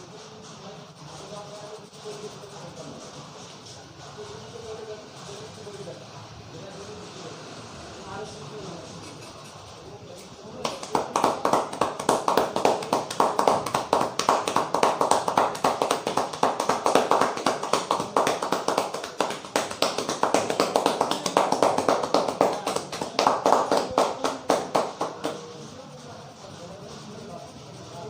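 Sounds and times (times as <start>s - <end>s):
hands tapping on a head: 10.6s - 25.4s.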